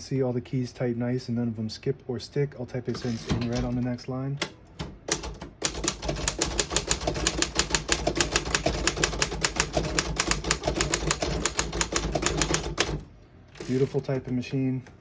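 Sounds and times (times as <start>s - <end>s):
manual typewriter clacking: 4.4s - 14.4s.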